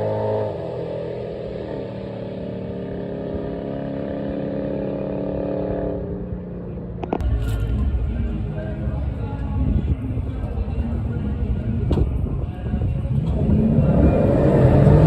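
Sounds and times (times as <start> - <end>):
car engine idling: 6.4 - 15.0.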